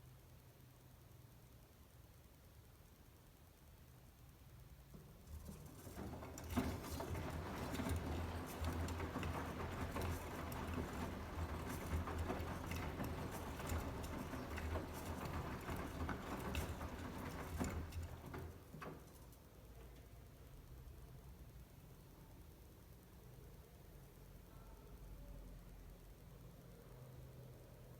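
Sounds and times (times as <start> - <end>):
washing machine motor hum: 5.1 - 19.2
clicks from tumbling laundry: 5.3 - 19.2.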